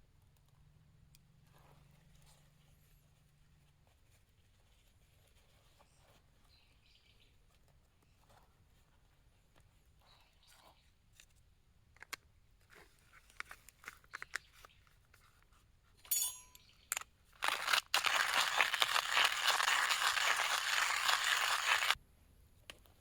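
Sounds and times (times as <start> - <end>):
light clinks and taps: 16.0 - 17.0.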